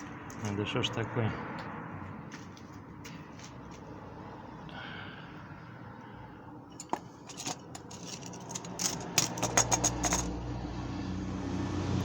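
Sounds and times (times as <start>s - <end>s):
hub rattling in plate: 6.8s - 10.3s
metallic clicks of clutch disc: 6.8s - 10.3s.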